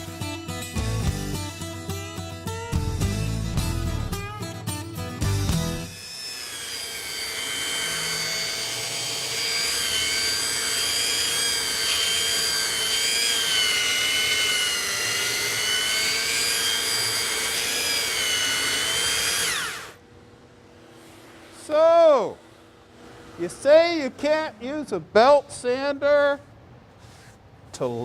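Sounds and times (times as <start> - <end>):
belt sander on wood: 5.8 - 20.0.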